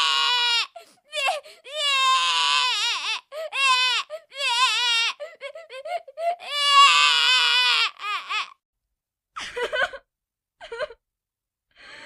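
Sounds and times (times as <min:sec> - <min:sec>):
baby-like crying and sobbing: 0:00.0 - 0:08.6.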